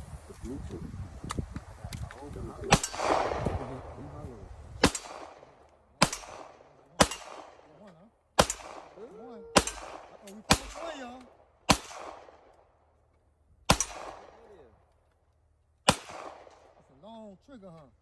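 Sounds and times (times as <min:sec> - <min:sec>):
pistol shots cracking: 0:02.7 - 0:03.9, 0:04.8 - 0:12.8, 0:13.7 - 0:14.6, 0:15.9 - 0:16.8.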